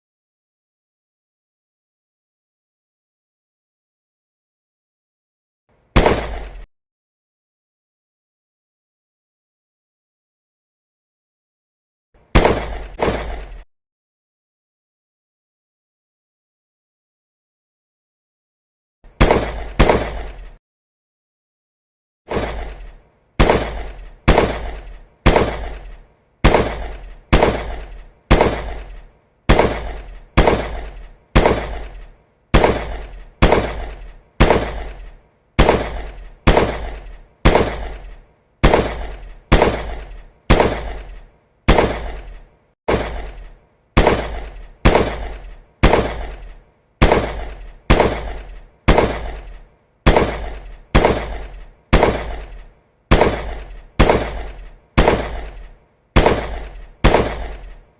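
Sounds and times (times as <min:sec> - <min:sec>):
gunshots: 0:05.9 - 0:06.7, 0:12.3 - 0:13.7, 0:19.1 - 0:20.6, 0:22.3 - 0:57.9.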